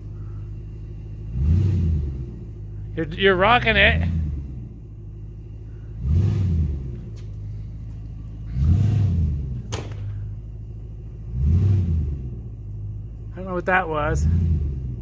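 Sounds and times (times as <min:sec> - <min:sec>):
vehicle engine revving: 0:00.0 - 0:15.0
sharp snap: 0:09.7 - 0:10.1.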